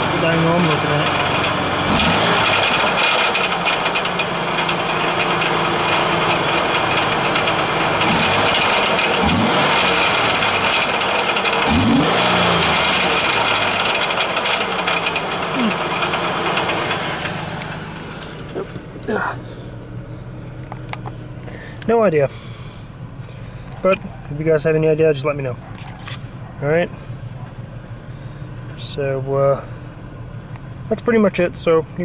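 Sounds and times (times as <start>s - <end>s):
car engine idling: 0.0s - 32.0s
metallic rattle: 2.4s - 19.0s.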